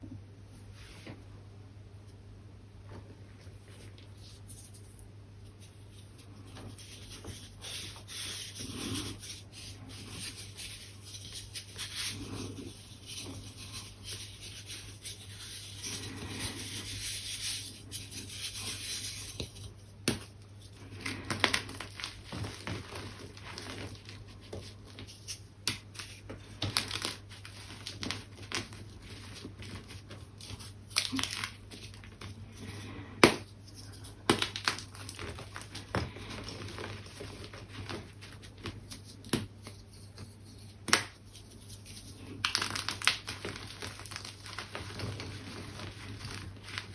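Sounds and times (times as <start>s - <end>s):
chalk scraping by hand: 5.5s - 19.8s
chalk pieces crunching: 5.6s - 24.4s.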